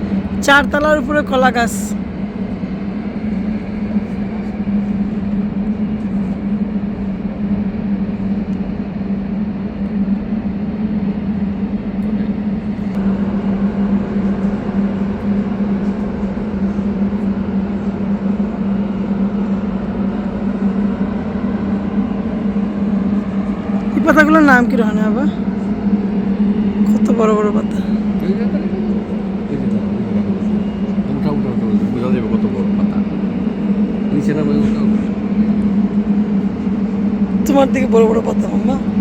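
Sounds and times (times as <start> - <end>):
low machine-like hum: 0.0 - 39.0.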